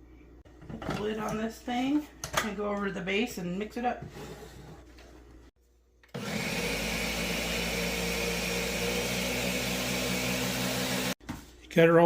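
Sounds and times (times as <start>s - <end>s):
blender motor running: 6.1s - 11.2s.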